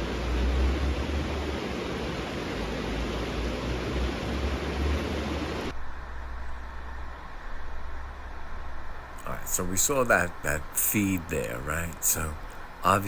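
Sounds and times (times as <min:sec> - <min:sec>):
river water rushing: 0:00.0 - 0:05.8, 0:08.4 - 0:13.0.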